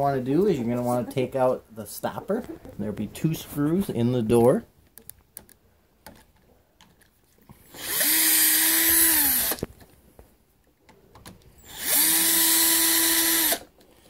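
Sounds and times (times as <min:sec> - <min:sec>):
power drill motor whine: 0:07.7 - 0:09.6, 0:11.6 - 0:13.7.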